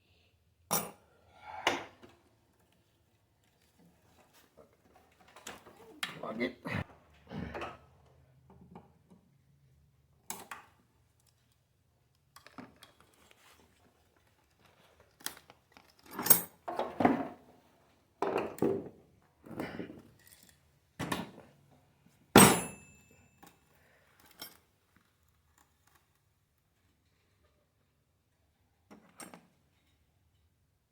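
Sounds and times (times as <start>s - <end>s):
sharp metallic clank: 22.4s - 23.0s.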